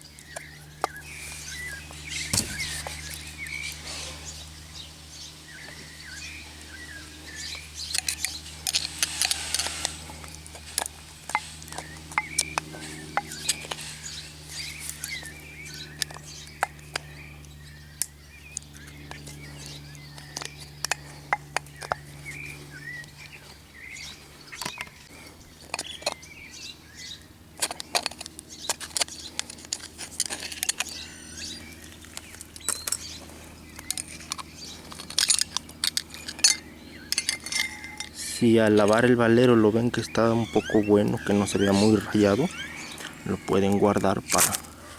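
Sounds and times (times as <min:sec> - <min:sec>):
birds chirping: 0:00.0 - 0:44.9
metal tools clinking on wheel hub: 0:27.6 - 0:31.5, 0:33.8 - 0:39.0.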